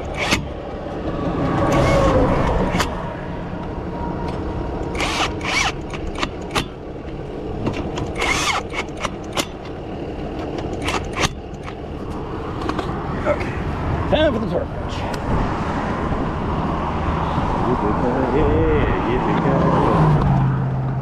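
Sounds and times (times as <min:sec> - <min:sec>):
tools rasping: 0:00.0 - 0:00.7, 0:01.3 - 0:03.0, 0:04.2 - 0:06.8, 0:07.6 - 0:09.8, 0:10.4 - 0:11.8
sharp metallic clicks: 0:00.0 - 0:12.8
roadside traffic: 0:00.0 - 0:21.0.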